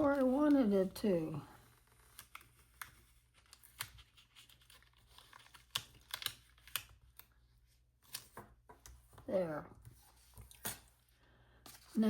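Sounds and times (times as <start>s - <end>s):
stickers being peeled: 1.7s - 9.0s.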